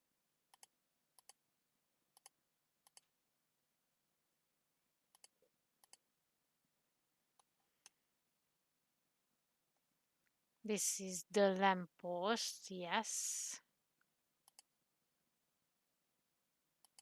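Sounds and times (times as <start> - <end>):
mouse clicks: 2.2 - 3.1, 14.4 - 14.7, 16.8 - 17.0.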